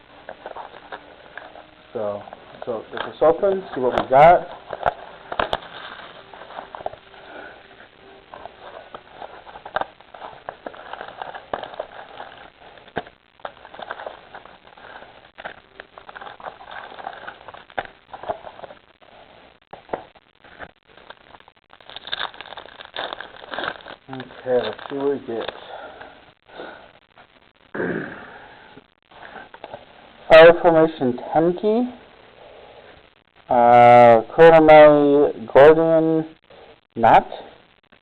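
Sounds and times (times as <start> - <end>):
packaging rustling and scraping: 0.2 - 26.8.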